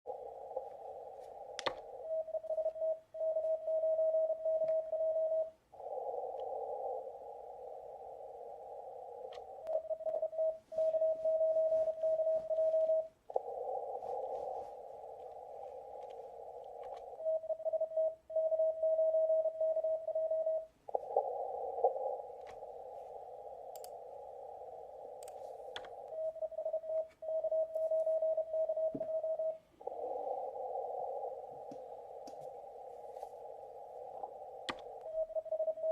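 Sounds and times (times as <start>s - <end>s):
radio receiver hiss: 0.1s - 35.9s
morse code tone: 9.6s - 20.7s.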